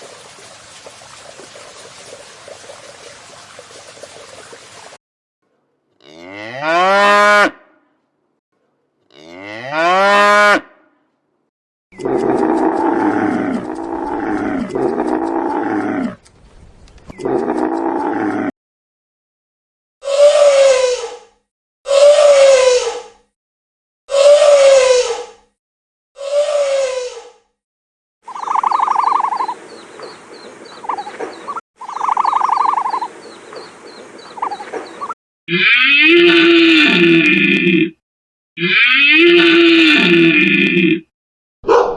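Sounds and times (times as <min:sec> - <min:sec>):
large animal calling loudly: 0:21.9 - 0:22.9, 0:24.1 - 0:25.2, 0:35.5 - 0:37.9, 0:38.6 - 0:41.0
rapid pulsing animal call: 0:24.1 - 0:25.1, 0:28.3 - 0:29.6, 0:30.8 - 0:33.2, 0:34.2 - 0:37.1.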